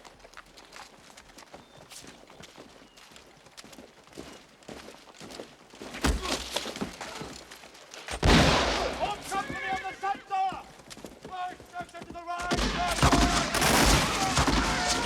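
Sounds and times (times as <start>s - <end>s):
horse hoofbeats and footsteps: 0.0s - 15.0s
musket shot: 8.1s - 9.7s, 12.4s - 15.0s
sharp crack: 8.1s - 9.7s, 12.4s - 15.0s.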